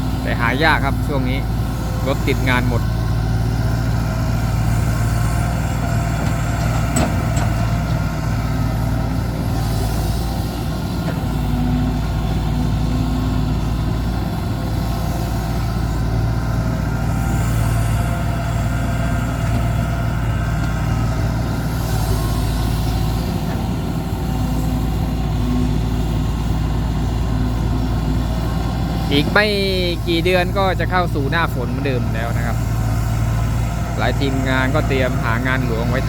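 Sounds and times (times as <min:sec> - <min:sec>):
heavy diesel engine running: 0:00.0 - 0:36.0.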